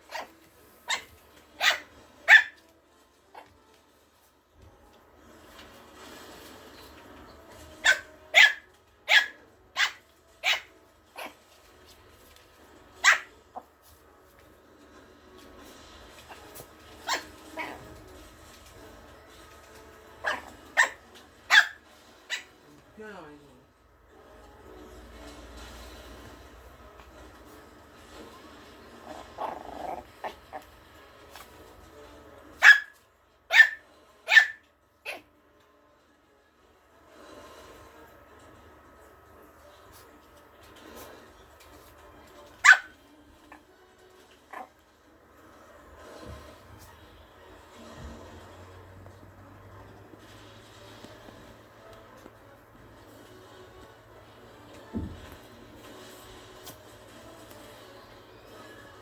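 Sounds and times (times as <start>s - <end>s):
puppy barking: 0.0s - 2.7s, 7.7s - 11.6s, 13.0s - 13.7s, 16.2s - 18.1s, 20.2s - 22.6s, 32.5s - 35.3s, 42.6s - 43.6s
puppy yip: 0.1s - 2.6s, 7.8s - 11.4s, 13.0s - 13.3s, 17.0s - 17.8s, 20.2s - 22.5s, 32.6s - 35.2s, 42.6s - 42.9s
small dog growling: 17.4s - 18.1s, 28.3s - 30.9s.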